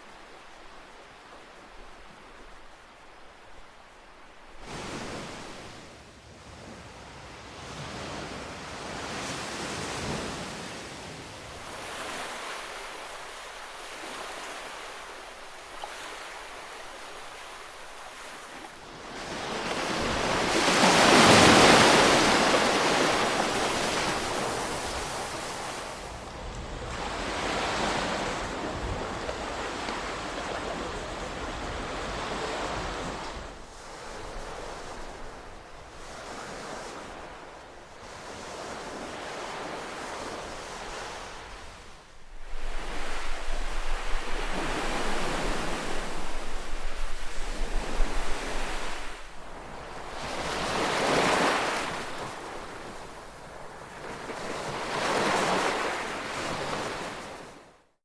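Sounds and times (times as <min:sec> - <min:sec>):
ocean waves breaking: 0:04.4 - 0:06.9, 0:07.5 - 0:57.6.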